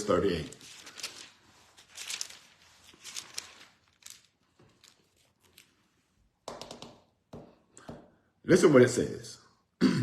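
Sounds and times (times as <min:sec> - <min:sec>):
thin paper pages rustling: 0:00.0 - 0:06.1.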